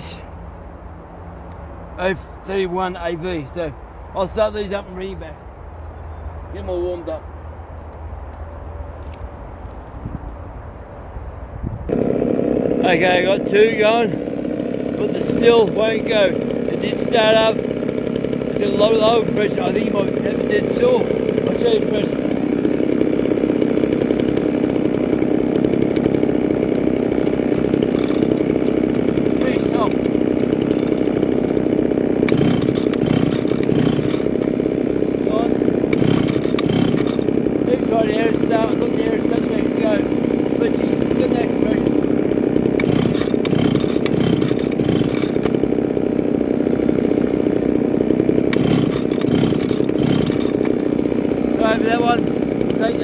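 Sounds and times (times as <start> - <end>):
chainsaws running: 0.0 - 0.4, 11.9 - 53.0.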